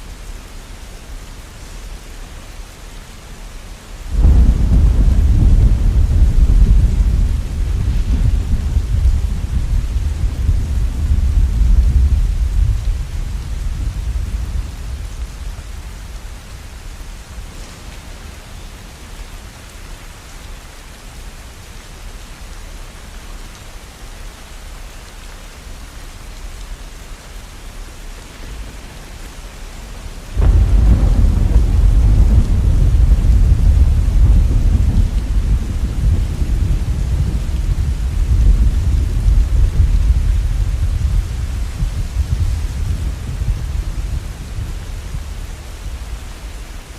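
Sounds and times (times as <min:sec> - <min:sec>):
steady rainfall: 0:00.0 - 0:46.9
thunder rumbling: 0:04.1 - 0:19.1, 0:28.4 - 0:46.9.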